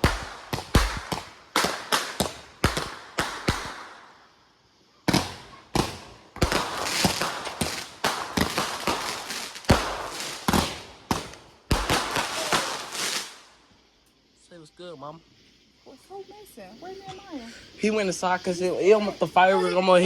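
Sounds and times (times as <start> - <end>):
fireworks bangs: 0.0 - 4.3, 5.0 - 13.6.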